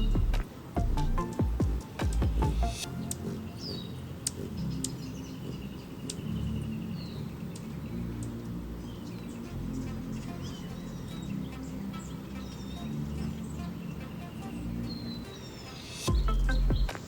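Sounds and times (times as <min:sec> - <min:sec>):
low steady rumble: 0:00.0 - 0:01.3
small birds chirping: 0:00.0 - 0:17.0
sharp ticks: 0:01.2 - 0:06.5.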